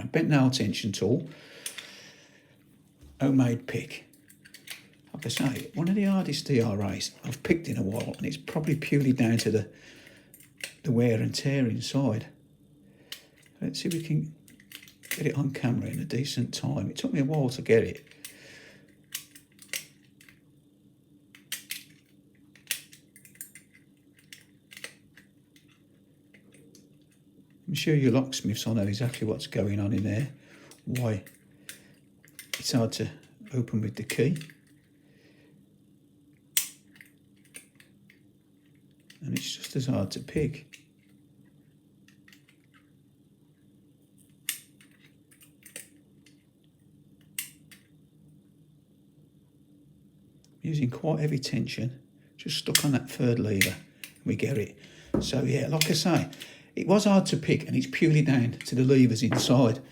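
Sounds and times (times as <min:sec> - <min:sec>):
lock pick clicking and scraping: 0:04.1 - 0:05.7, 0:19.0 - 0:20.3, 0:21.4 - 0:25.0, 0:44.5 - 0:46.0.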